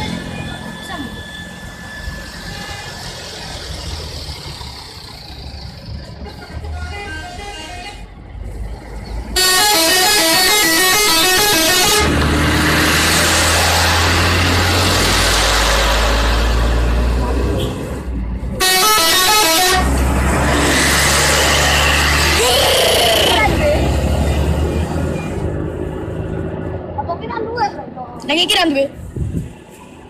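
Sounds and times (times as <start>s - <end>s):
bus horn playing multi-tone tune: 2.4s - 3.1s, 6.2s - 8.1s, 9.4s - 12.3s, 18.6s - 20.0s
loud rushing noise: 11.2s - 18.1s, 19.6s - 26.7s.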